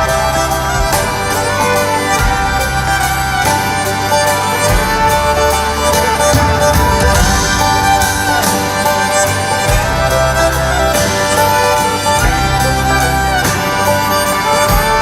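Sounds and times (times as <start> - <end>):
fiddle leading: 0.0 - 15.0
guitar: 0.0 - 15.0
steady drum beat: 0.0 - 15.0.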